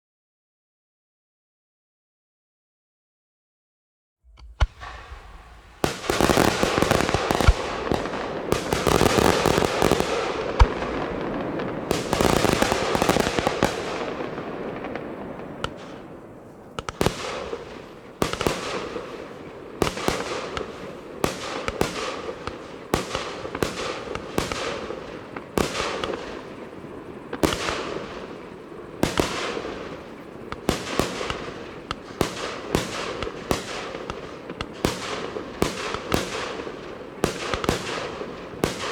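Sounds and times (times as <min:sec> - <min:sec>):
fireworks bursting: 0:04.3 - 0:38.9
sharp firework bangs: 0:04.3 - 0:38.9.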